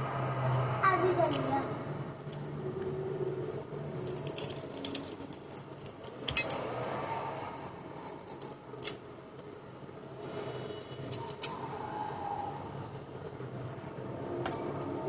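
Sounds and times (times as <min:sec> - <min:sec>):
kitchen utensils clinking: 0:06.2 - 0:06.8.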